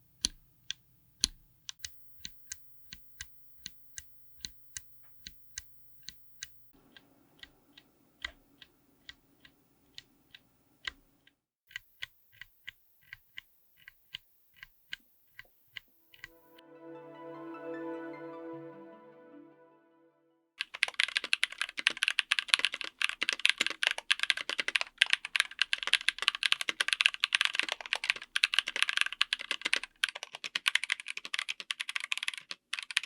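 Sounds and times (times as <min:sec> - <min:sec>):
mechanical keyboard switches clicking: 0:00.2 - 0:11.1.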